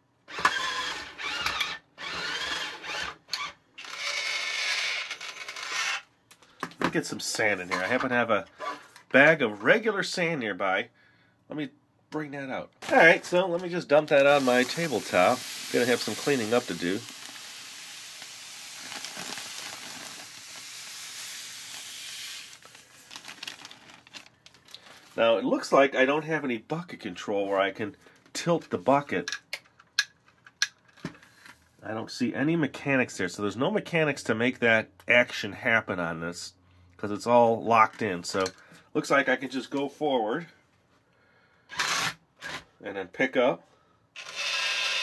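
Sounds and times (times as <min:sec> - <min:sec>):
toy electric motor whirring: 0:00.3 - 0:06.1, 0:14.4 - 0:22.8, 0:41.7 - 0:42.2, 0:44.2 - 0:45.0
sand pouring onto a table: 0:14.2 - 0:24.0.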